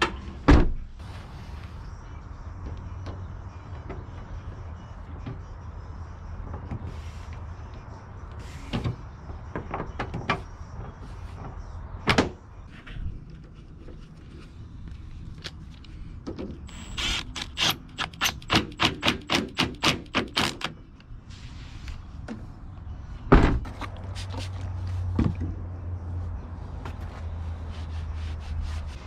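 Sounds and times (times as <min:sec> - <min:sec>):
car parts knocking and clattering: 0:17.9 - 0:20.8, 0:23.3 - 0:23.9, 0:25.1 - 0:25.6.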